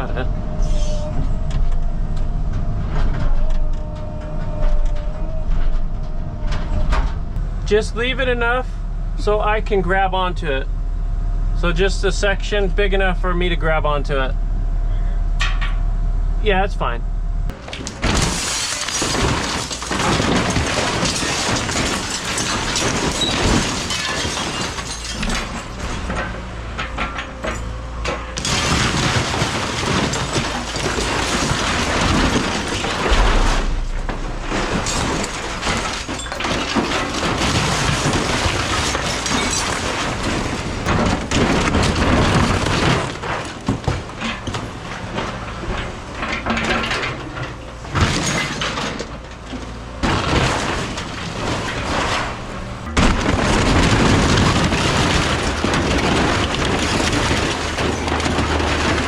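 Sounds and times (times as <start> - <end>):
debris crunching and breaking: 0.0 - 8.6, 17.5 - 59.0
excavator tearing apart building: 0.0 - 10.6, 17.5 - 59.0.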